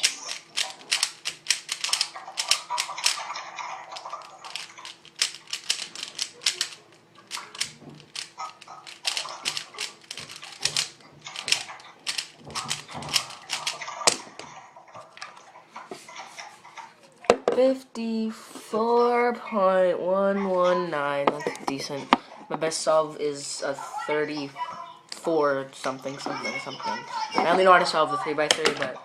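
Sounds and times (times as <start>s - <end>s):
puzzle cube clicking: 0.0s - 14.5s.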